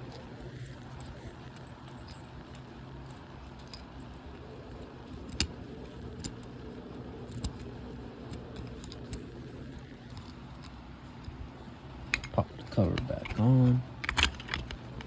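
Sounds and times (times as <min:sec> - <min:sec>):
steady low hum: 0:00.0 - 0:15.0
key fob clicks and rattles: 0:00.1 - 0:06.6, 0:07.2 - 0:09.4, 0:12.0 - 0:15.0.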